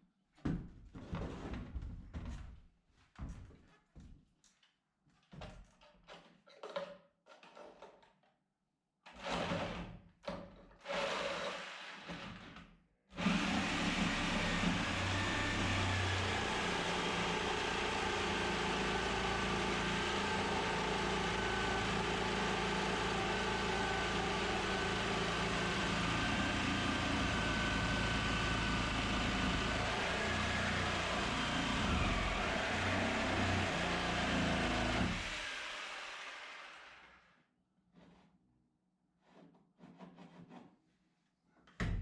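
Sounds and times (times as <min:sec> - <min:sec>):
motor running: 0:13.2 - 0:37.0.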